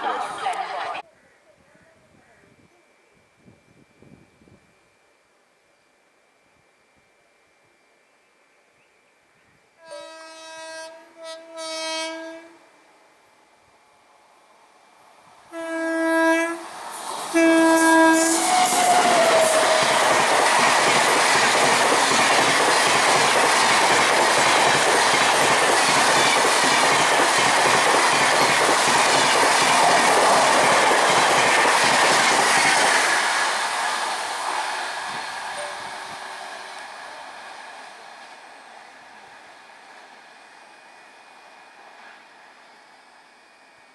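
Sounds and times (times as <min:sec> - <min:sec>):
train passing with clickety-clack: 0:00.0 - 0:01.0, 0:14.8 - 0:43.9
train horn blasts: 0:09.8 - 0:13.3, 0:15.5 - 0:21.7, 0:34.4 - 0:37.1.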